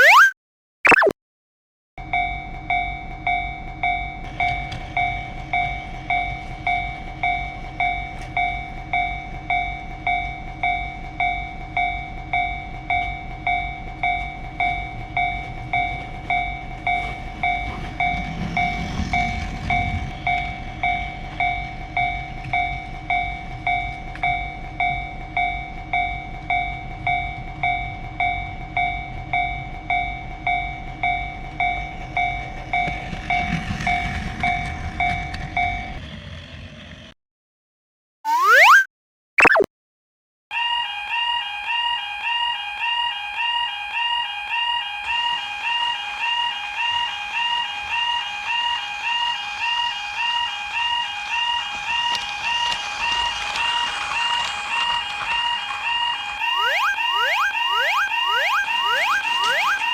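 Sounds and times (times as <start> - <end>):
short rising chirp: 0.0 - 0.3, 0.9 - 1.1, 38.3 - 39.7
electronic warning bell ringing: 56.4 - 59.9.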